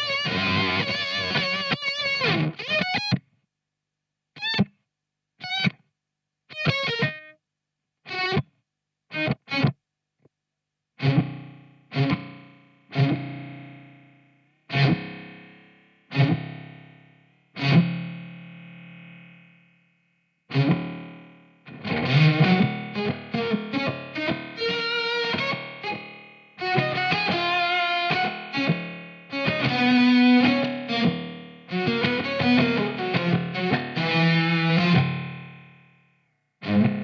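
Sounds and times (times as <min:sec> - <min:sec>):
guitar notes ringing: 0:00.0 - 0:03.2, 0:11.0 - 0:19.4, 0:20.5 - 0:37.0
distorted electric guitar: 0:00.0 - 0:03.3, 0:04.4 - 0:04.8, 0:05.4 - 0:05.8, 0:06.5 - 0:07.4, 0:08.1 - 0:09.8, 0:11.0 - 0:19.8, 0:20.5 - 0:37.0.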